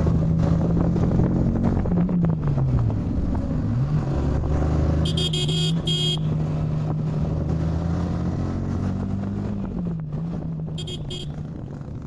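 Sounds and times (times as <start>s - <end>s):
high-pitched horn beeps: 5.0s - 6.3s, 10.8s - 11.4s
motorcycle engine running: 5.0s - 6.5s, 10.6s - 12.0s.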